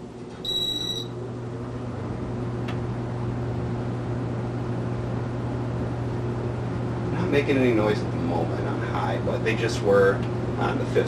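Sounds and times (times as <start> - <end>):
ceiling fan motor humming: 0.0 - 11.0
short electronic beep: 0.4 - 1.1.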